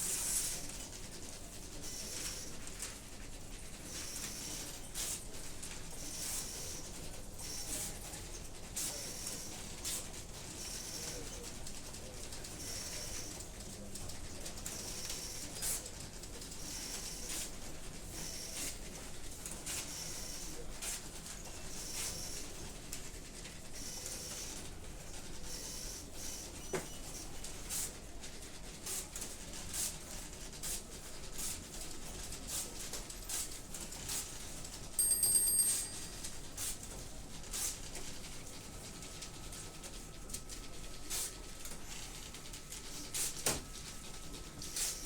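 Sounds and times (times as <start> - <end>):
high ringing tone: 35.0 - 36.2.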